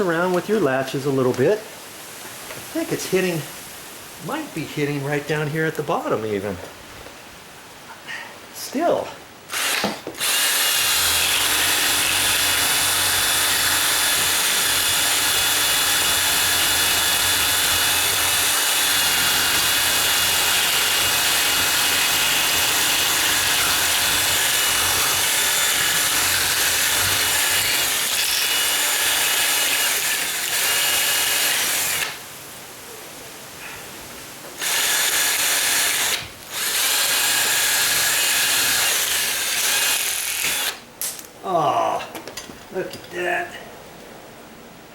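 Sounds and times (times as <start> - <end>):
electric drill grinding metal: 9.5 - 32.2, 34.6 - 40.8.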